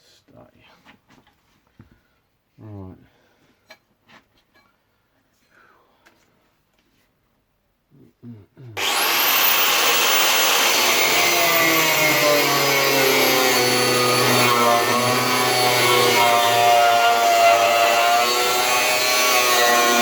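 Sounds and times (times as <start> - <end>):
angle grinder whining: 8.8 - 20.0.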